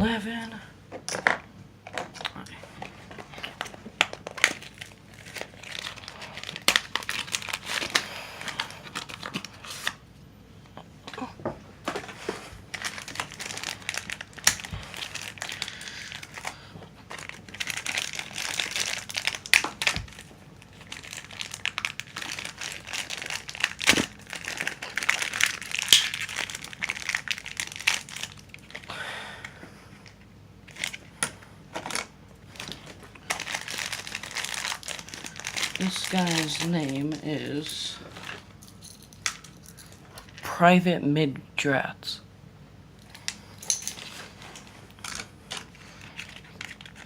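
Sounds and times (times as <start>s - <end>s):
packaging crinkling and rustling: 1.8s - 10.0s, 11.8s - 28.9s, 30.0s - 40.4s, 43.1s - 47.0s
box being torn open: 22.2s - 26.5s.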